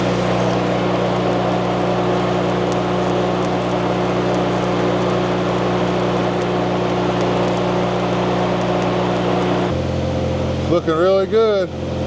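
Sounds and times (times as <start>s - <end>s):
welding arc crackle: 0.0s - 2.7s
welding machine hum: 0.0s - 10.5s.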